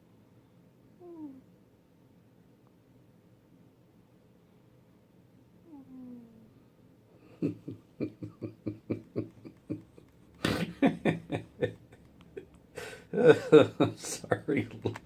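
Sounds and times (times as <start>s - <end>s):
person laughing: 7.2s - 15.0s.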